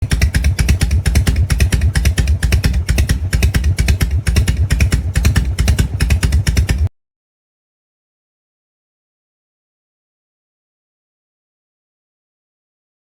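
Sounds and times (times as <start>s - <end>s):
motorcycle engine idling: 0.0s - 6.9s.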